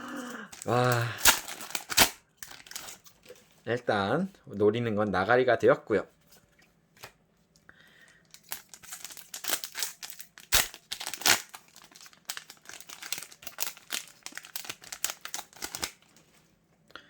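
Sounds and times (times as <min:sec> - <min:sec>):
foil wrapper crinkling and tearing: 0:00.3 - 0:03.2, 0:08.3 - 0:16.2.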